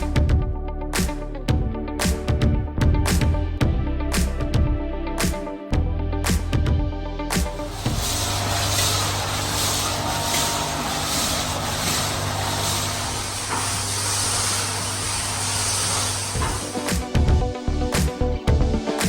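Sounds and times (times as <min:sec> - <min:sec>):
high-pressure water jets spraying: 0:07.7 - 0:19.0.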